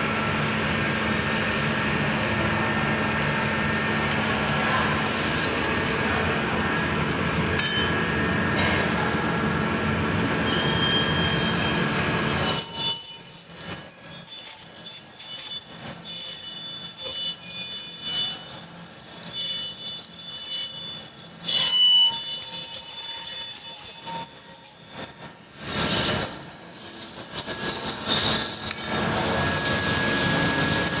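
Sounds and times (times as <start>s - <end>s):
cutting tool squealing on metal: 10.4s - 31.0s
lathe humming: 28.0s - 31.0s.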